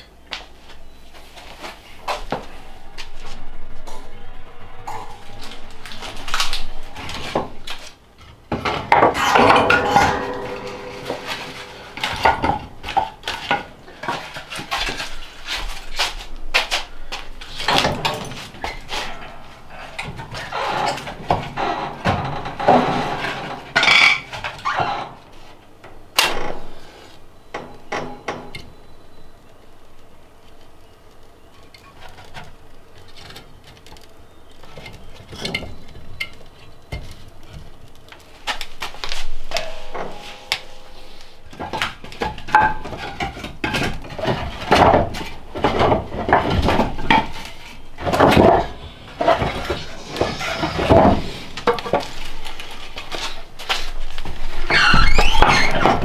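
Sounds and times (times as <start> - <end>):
pots and pans clattering: 4.8 - 29.2, 38.4 - 56.0.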